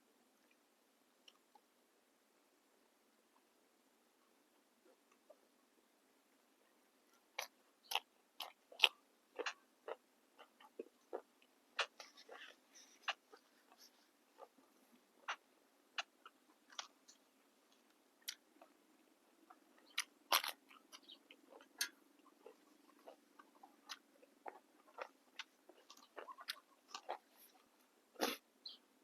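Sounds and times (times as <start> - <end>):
person chewing crunchy vegetables: 7.2 - 28.8.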